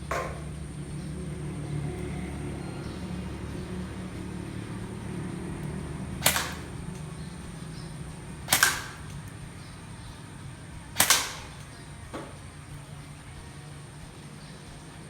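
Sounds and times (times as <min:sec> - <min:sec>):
airsoft gun shots: 0:00.1 - 0:00.6, 0:06.2 - 0:07.5, 0:08.4 - 0:10.2, 0:10.8 - 0:12.6.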